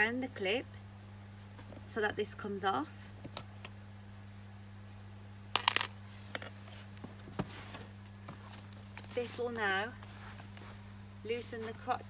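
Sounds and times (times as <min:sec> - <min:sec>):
metal clip clinking: 0:05.6 - 0:06.0.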